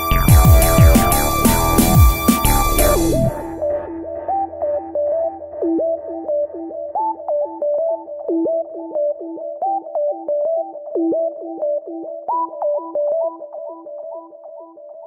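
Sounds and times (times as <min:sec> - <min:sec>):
synthesizer playing repeating notes: 0:00.0 - 0:06.1.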